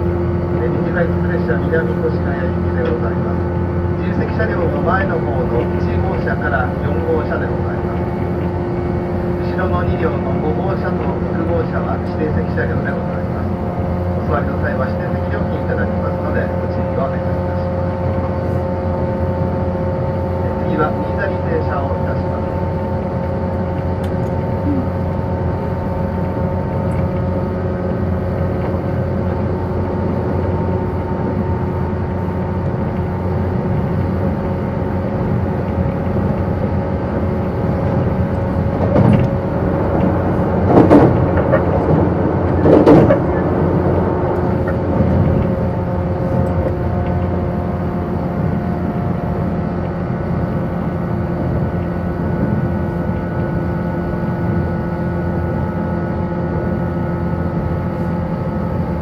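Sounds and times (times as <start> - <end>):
train wheels rumbling on rails: 0.0 - 54.7
train motor hum: 0.0 - 59.0
train clatters: 35.5 - 47.4.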